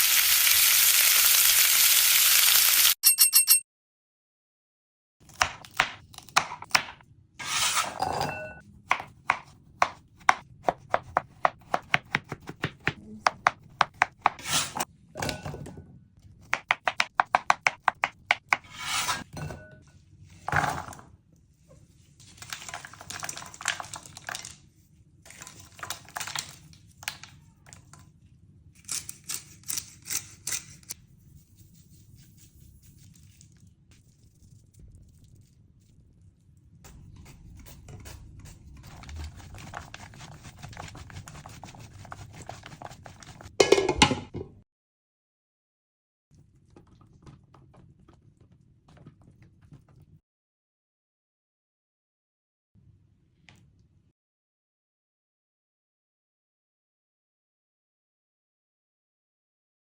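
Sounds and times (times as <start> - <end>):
knife chopping on cutting board: 5.3 - 7.8, 8.9 - 14.8, 16.4 - 19.2.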